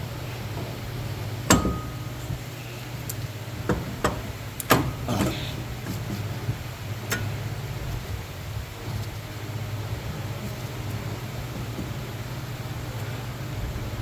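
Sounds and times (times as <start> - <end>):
steady low hum: 0.0 - 14.0
metal tools clanking: 1.5 - 2.4, 3.7 - 5.7.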